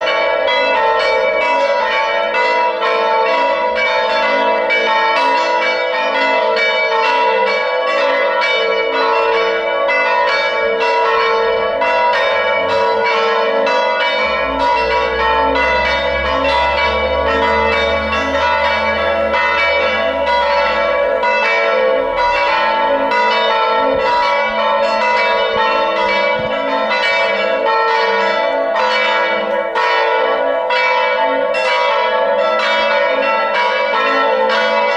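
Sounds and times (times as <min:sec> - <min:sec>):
church bells pealing: 0:00.0 - 0:34.9
low rumble: 0:12.2 - 0:23.2.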